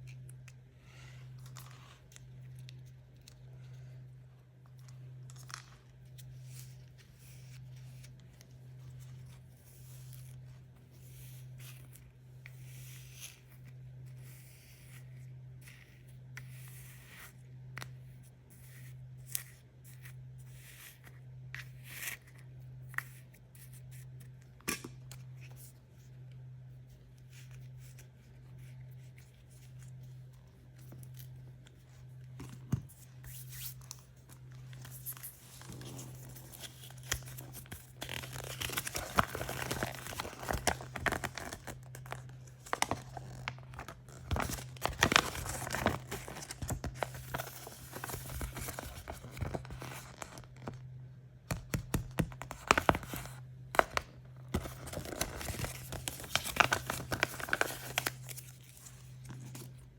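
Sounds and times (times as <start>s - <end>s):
plastic wrapping tearing and rustling: 34.6s - 50.8s, 54.6s - 59.7s.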